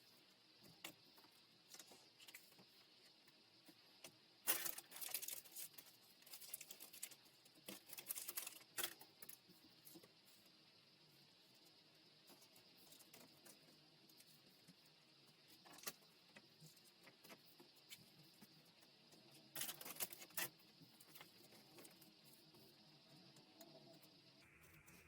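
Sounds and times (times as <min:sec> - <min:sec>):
packaging rustling and crinkling: 0:04.5 - 0:09.0.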